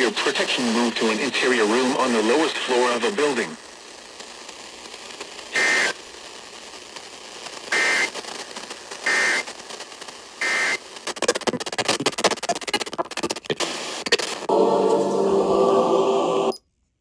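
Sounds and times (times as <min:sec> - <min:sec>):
crackling radio static: 0:00.0 - 0:15.1.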